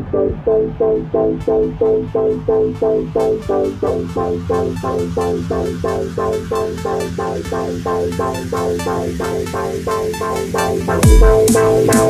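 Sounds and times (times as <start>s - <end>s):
pulsing synth chord: 0.0s - 12.0s
steady bass: 0.0s - 12.0s
hi-hats: 3.1s - 12.0s.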